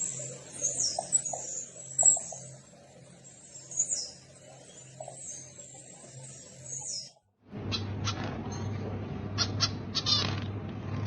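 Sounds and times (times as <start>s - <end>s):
small birds chirping: 0.0s - 10.4s.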